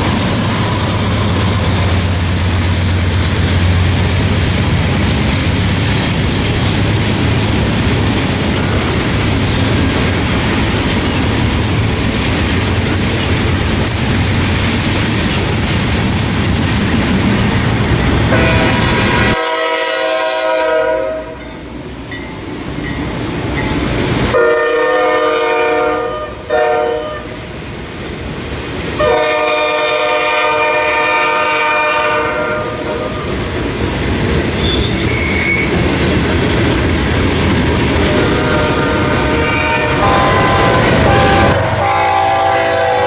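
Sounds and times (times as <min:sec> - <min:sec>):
train rumbling on rails: 0:00.0 - 0:43.0
locomotive air horn: 0:18.3 - 0:21.4, 0:24.3 - 0:27.4, 0:29.0 - 0:33.2, 0:38.1 - 0:43.0.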